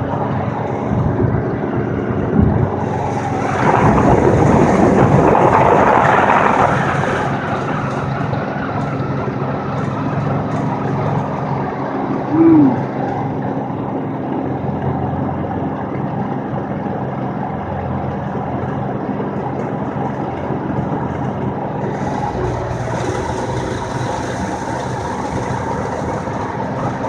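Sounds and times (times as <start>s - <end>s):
engine and tyre drone: 0.0s - 27.0s
low hum: 12.3s - 13.2s.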